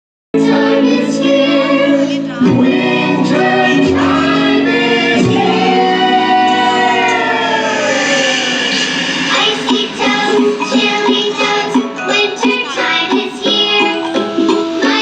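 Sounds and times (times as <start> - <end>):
children's choir singing: 0.4 - 15.0.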